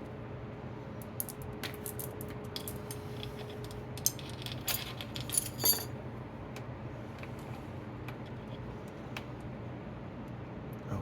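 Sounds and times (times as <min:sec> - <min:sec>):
metal chain clinking and rattling: 0:02.6 - 0:05.9.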